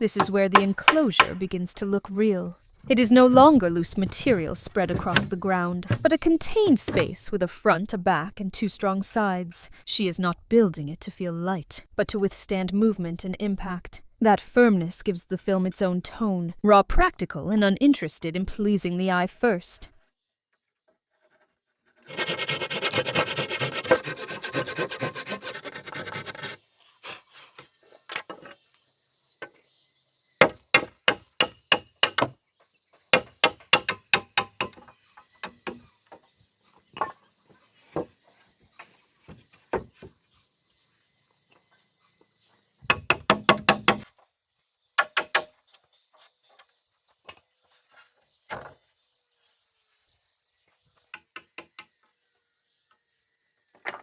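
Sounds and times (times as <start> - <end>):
knocks and taps on wood: 0.2 - 1.4, 3.3 - 6.1, 6.9 - 7.1
rasping on wood: 0.2 - 1.4, 2.9 - 6.2, 22.0 - 27.6
faint insect buzz: 20.1 - 54.0.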